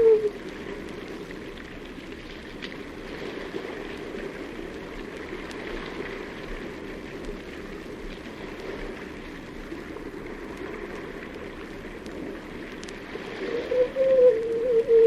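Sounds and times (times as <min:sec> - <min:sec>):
seal calling: 0:00.0 - 0:00.4, 0:13.4 - 0:15.0.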